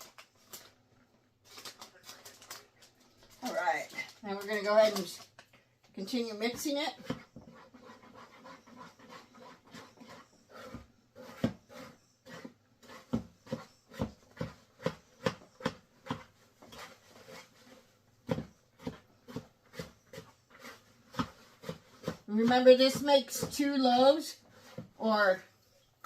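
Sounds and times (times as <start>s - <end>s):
dough squelching by hand: 6.0s - 26.0s.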